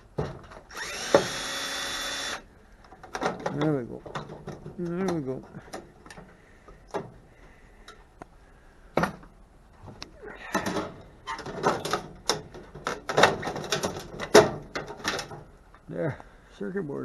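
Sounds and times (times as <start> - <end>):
metallic clattering and scraping: 9.0 - 15.7
clicks and knocks: 9.9 - 15.5.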